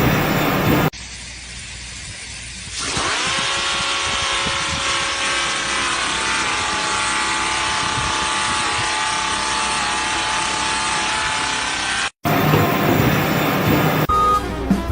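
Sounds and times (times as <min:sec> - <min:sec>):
machine motor whining: 0:00.0 - 0:00.9, 0:07.5 - 0:14.1.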